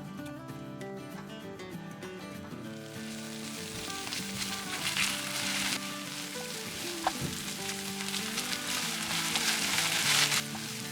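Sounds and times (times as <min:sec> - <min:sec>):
background music with held notes: 0:00.0 - 0:10.9
hissing kitchen noise: 0:02.7 - 0:10.9.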